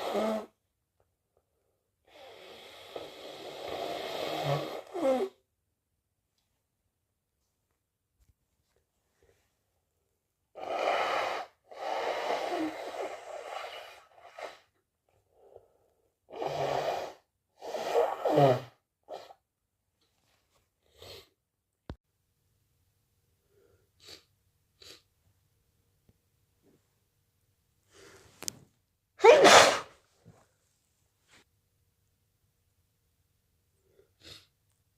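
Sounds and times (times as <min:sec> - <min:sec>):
person blowing nose: 0:00.0 - 0:00.6, 0:02.1 - 0:05.4, 0:10.6 - 0:14.8, 0:16.3 - 0:19.4, 0:24.0 - 0:25.1, 0:29.2 - 0:30.0
faint sniffs: 0:23.6 - 0:25.1, 0:27.9 - 0:28.5, 0:29.2 - 0:30.0, 0:33.9 - 0:34.6
person sneezing: 0:29.2 - 0:30.0.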